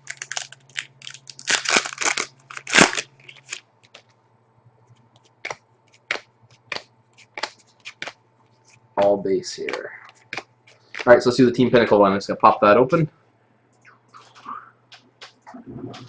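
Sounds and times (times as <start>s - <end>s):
foil wrapper crinkling and tearing: 0.0s - 4.0s, 5.2s - 8.2s, 9.5s - 11.3s
cards clicking: 5.2s - 8.2s, 9.6s - 11.1s.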